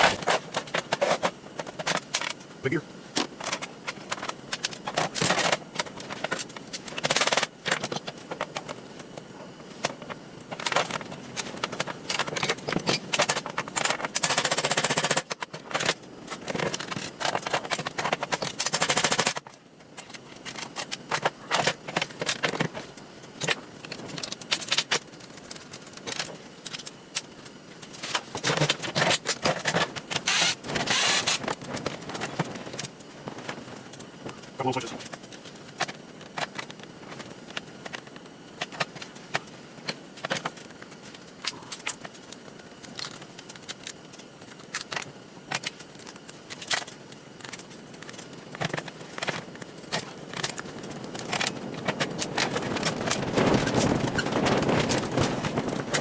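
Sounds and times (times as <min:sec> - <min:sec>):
metal parts clicking and clattering: 0:09.9 - 0:22.8.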